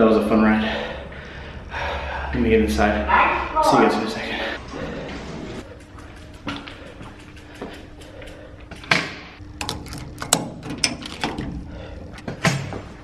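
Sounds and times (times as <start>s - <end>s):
faint steady hum: 0.0s - 13.0s
door being unlocked and opened: 8.7s - 11.6s.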